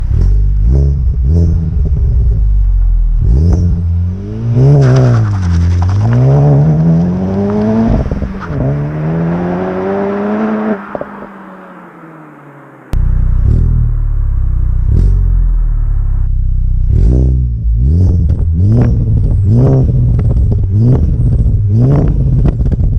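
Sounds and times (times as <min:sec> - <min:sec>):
car engine idling and revving: 0:00.0 - 0:22.9
car exhaust pops: 0:02.8 - 0:03.9, 0:18.0 - 0:22.9.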